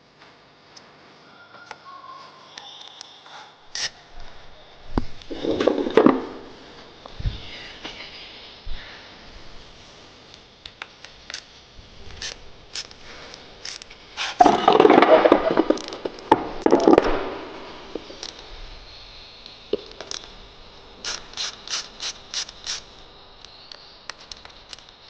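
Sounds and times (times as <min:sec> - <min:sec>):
loud scraping and rubbing: 0:05.3 - 0:06.6, 0:14.2 - 0:18.3.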